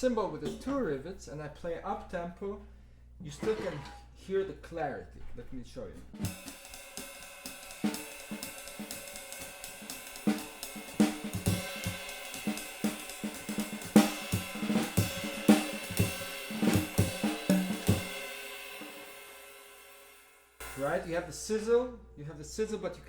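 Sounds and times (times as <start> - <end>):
ride cymbal swing pattern: 6.1 - 21.8
snare drum accents: 6.2 - 19.2
bass drum accents: 7.8 - 19.1.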